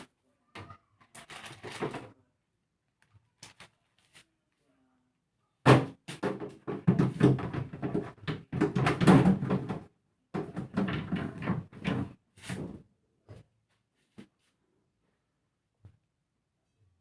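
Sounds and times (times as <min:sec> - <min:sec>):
knocking and clattering in refrigerator: 0:05.7 - 0:12.8.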